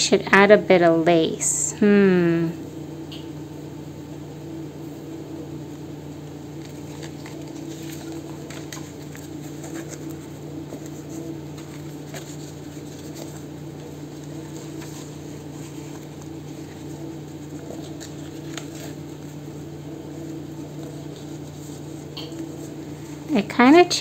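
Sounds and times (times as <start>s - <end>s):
steady low hum: 0.0s - 24.0s
paper rustling: 6.6s - 23.8s.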